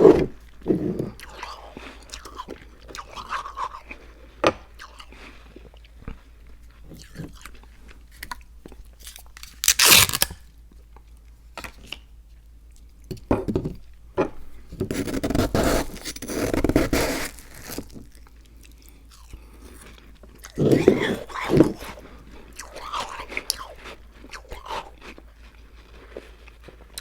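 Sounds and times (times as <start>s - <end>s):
crunching cookies: 1.1s - 10.4s, 14.9s - 27.0s.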